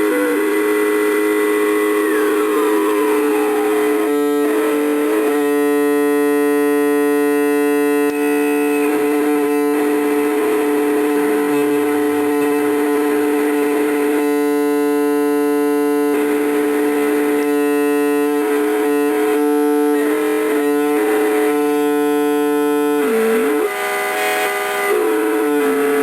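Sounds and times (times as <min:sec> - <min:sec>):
electronic buzzing drone: 0:00.0 - 0:26.0.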